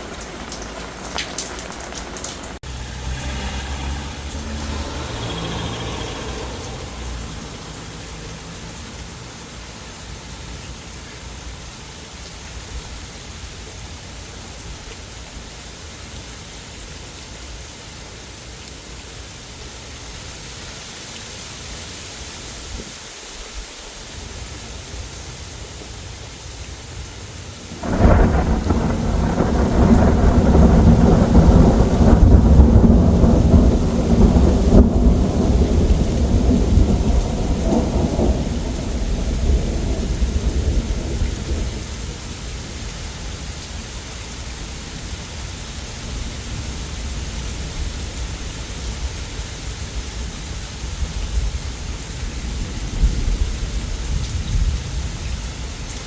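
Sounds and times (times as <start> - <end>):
thunder clap and rolling rumble: 0.0 - 9.0, 27.7 - 42.6, 51.1 - 55.3
steady rain falling: 0.0 - 56.0.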